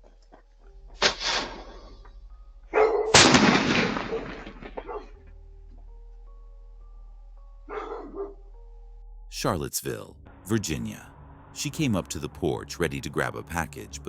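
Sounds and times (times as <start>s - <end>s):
firework rushing and bang: 1.0s - 1.8s.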